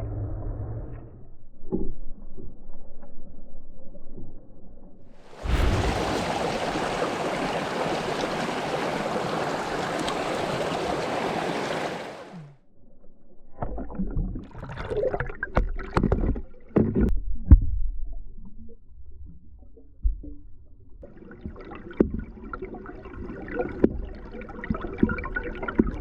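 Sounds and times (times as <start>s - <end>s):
rushing stream water: 5.3s - 12.4s.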